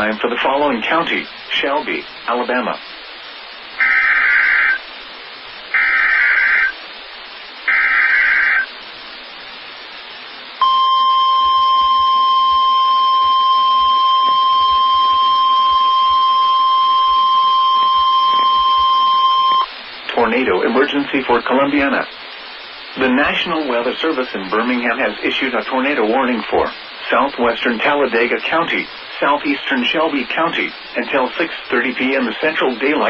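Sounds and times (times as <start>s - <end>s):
digital data bursts: 3.8s - 4.9s, 5.7s - 6.8s, 7.6s - 8.7s
steady alarm tone: 5.7s - 6.8s, 10.6s - 19.7s.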